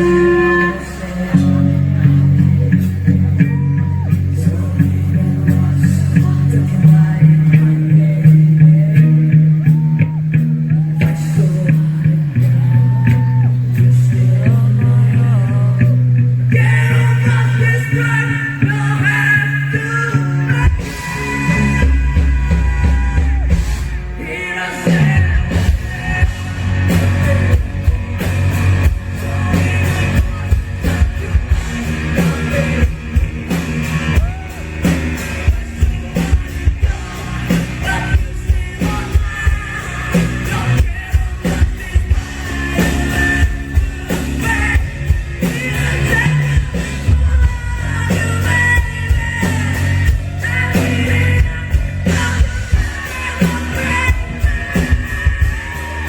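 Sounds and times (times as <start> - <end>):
guitars: 0.0 - 56.0
person singing: 0.0 - 56.0
rock band playing live: 0.0 - 56.0
loud fast drums: 20.6 - 56.0.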